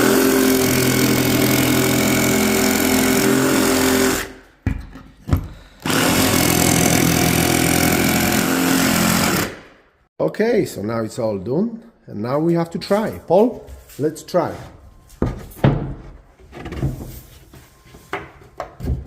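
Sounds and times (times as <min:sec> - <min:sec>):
jigsaw cutting: 0:00.0 - 0:04.4, 0:05.8 - 0:09.7.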